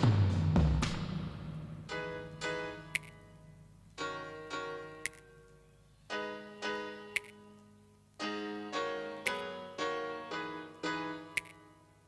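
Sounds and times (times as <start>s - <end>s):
soft keyboard chords: 1.6s - 12.0s.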